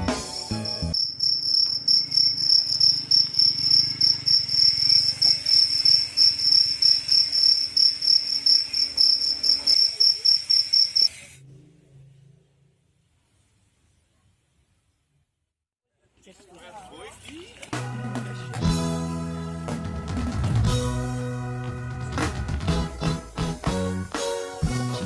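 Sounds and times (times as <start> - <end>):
music: 0.0 - 1.0, 17.3 - 25.0
insect trilling: 0.6 - 11.3.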